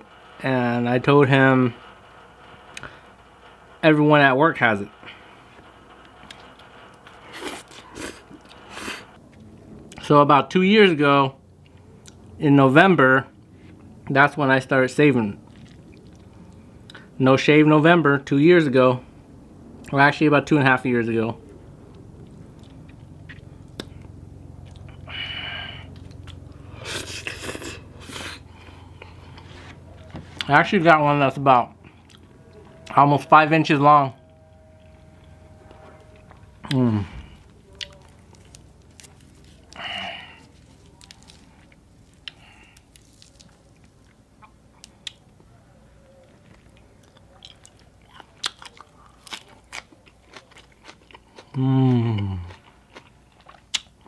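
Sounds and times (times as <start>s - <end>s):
person chewing food: 15.5s - 17.0s, 21.9s - 25.1s, 25.8s - 30.5s, 31.8s - 32.3s, 35.8s - 45.2s, 46.4s - 54.0s.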